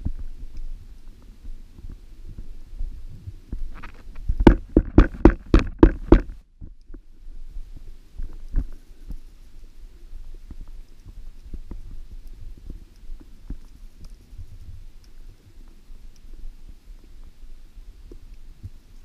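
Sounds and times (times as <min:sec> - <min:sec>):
steady low rumble: 0:00.0 - 0:19.0
sharp knocks: 0:04.4 - 0:06.4
faint clicks: 0:10.2 - 0:17.4.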